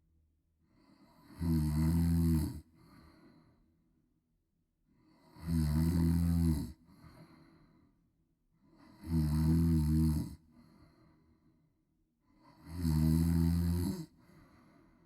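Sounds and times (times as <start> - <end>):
quiet breath: 0.6 - 1.6, 2.4 - 4.1, 4.9 - 5.5, 6.7 - 9.2, 10.3 - 12.7, 13.9 - 15.0
woman snoring loudly: 1.2 - 2.6, 5.3 - 6.8, 8.9 - 10.4, 12.6 - 14.1.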